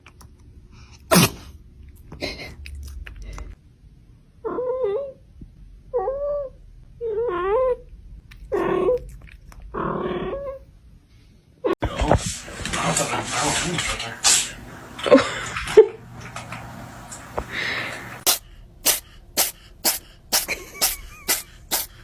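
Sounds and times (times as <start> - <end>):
cat sneezing: 1.1 - 1.6, 18.2 - 22.0.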